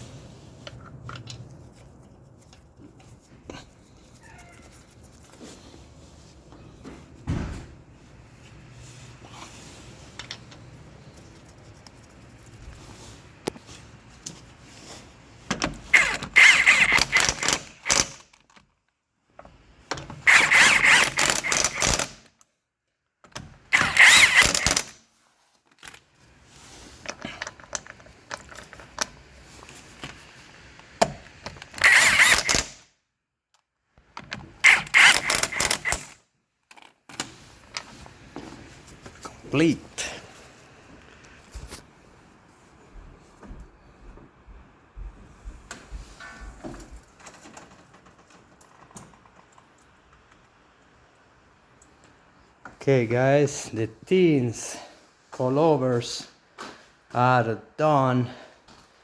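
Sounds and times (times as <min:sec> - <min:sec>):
handheld power tool bursts: 0:15.9 - 0:18.2, 0:20.2 - 0:22.3, 0:23.7 - 0:25.0, 0:31.0 - 0:32.9, 0:34.6 - 0:36.2.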